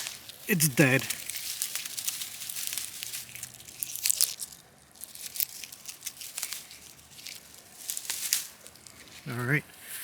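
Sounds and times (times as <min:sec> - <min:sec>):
dry weeds crunching and crackling: 0:00.0 - 0:09.5.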